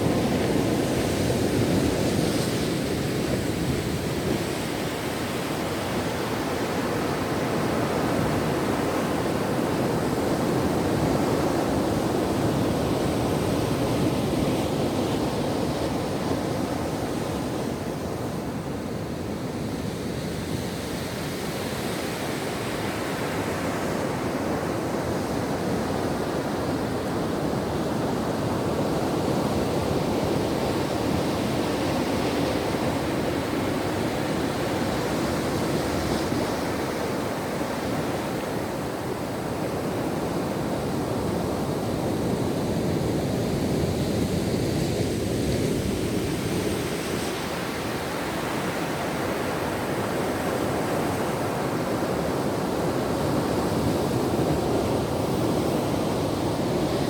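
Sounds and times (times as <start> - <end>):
ocean surf washing on shore: 0.0 - 57.0.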